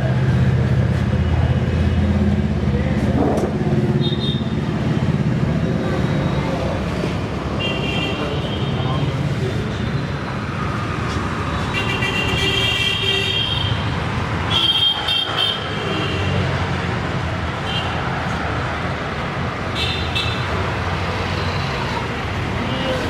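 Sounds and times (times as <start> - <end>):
road traffic: 0.0 - 23.0
vehicle horns honking: 4.0 - 4.6, 7.6 - 9.0, 11.7 - 13.8, 14.5 - 16.4.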